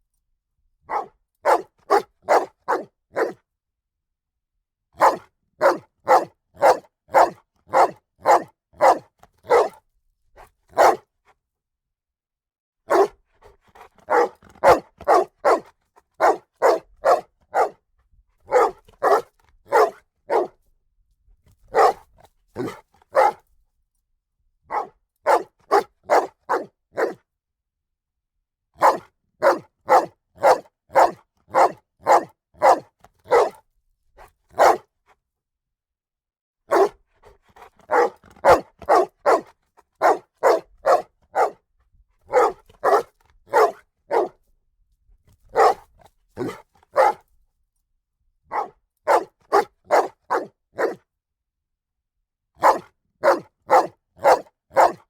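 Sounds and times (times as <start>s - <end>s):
dog barking: 0.9s - 3.4s, 5.0s - 9.8s, 10.7s - 11.1s, 12.9s - 13.2s, 13.8s - 17.8s, 18.5s - 20.6s, 21.7s - 23.4s, 24.7s - 27.2s, 28.8s - 33.6s, 34.5s - 34.9s, 36.7s - 41.7s, 42.3s - 44.4s, 45.5s - 47.3s, 48.5s - 51.1s, 52.6s - 55.0s.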